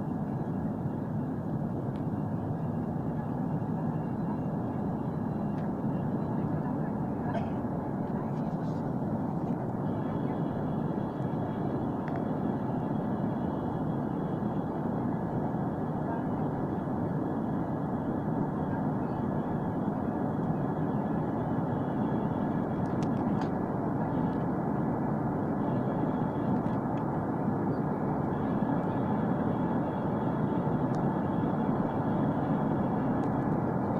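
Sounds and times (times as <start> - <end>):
faint high whine: 0.0 - 33.9
jet engines roaring: 0.0 - 33.9
rush of air in jet cabin: 0.0 - 33.9.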